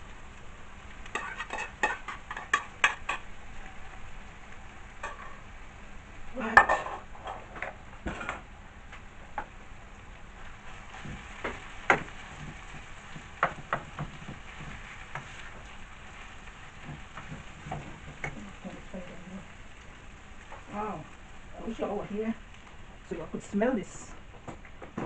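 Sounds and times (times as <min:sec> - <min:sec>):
food sizzling in a pan: 0:00.0 - 0:25.0
utensil scraping and knocking pan: 0:01.1 - 0:03.3.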